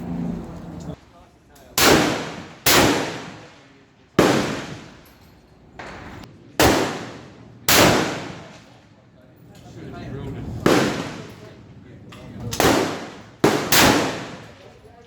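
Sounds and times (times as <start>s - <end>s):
rifle shots: 1.8s - 5.0s, 5.9s - 8.8s, 10.6s - 11.5s, 12.5s - 14.7s.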